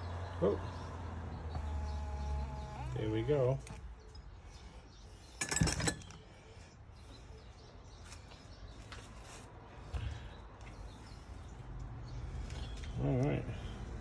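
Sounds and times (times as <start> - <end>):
wiper motor running: 0.1 - 4.0
squeaky clatter: 5.4 - 6.3.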